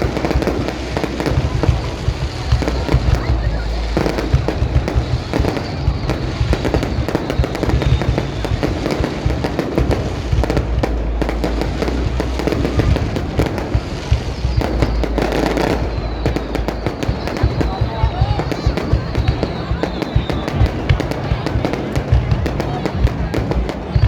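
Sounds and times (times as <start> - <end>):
fireworks bangs and crackles: 0.0 - 24.0
low rumble of bursting shells: 0.0 - 24.0.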